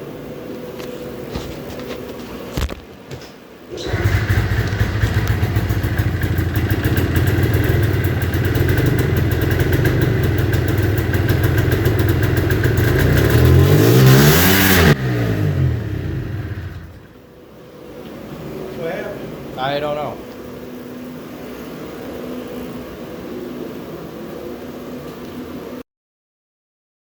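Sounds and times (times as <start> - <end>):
snowmobile engine running and revving: 3.9 - 17.0.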